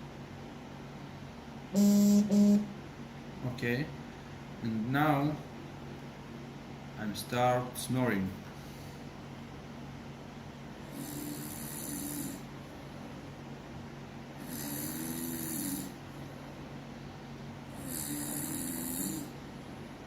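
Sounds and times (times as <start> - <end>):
air conditioner hum: 0.0 - 20.0
person snoring: 10.8 - 12.5, 14.4 - 16.0, 17.7 - 19.4.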